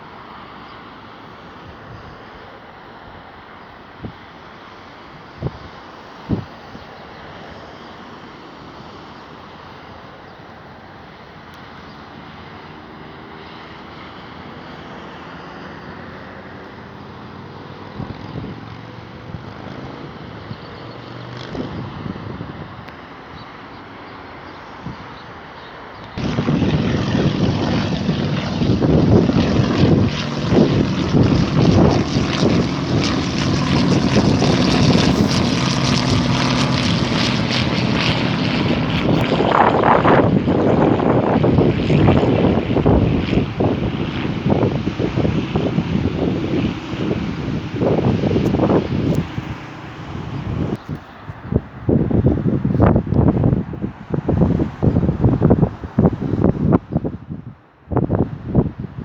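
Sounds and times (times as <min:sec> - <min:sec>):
propeller aircraft engines: 0:00.0 - 0:59.0
low hum: 0:26.2 - 0:44.2.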